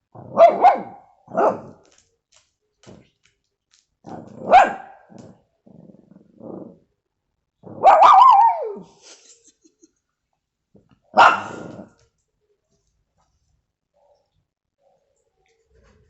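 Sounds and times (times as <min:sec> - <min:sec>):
dog barking and growling: 0:00.1 - 0:01.9, 0:04.0 - 0:06.9, 0:07.6 - 0:09.0, 0:11.1 - 0:12.0.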